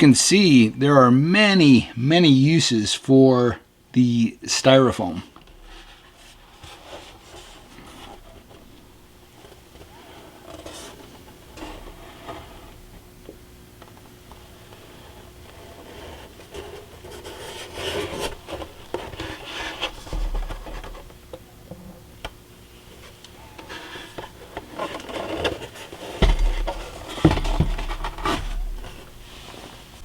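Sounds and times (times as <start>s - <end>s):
rubbing and scraping on work surface: 14.5s - 21.0s.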